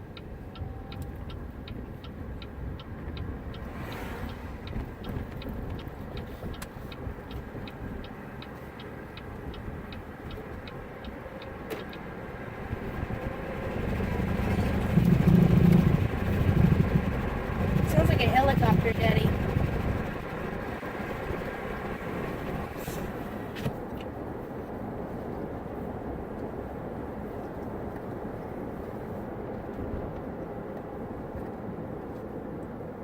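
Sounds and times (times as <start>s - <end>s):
turn signal relay ticking: 0.0s - 22.3s
car engine and road noise: 0.0s - 33.0s.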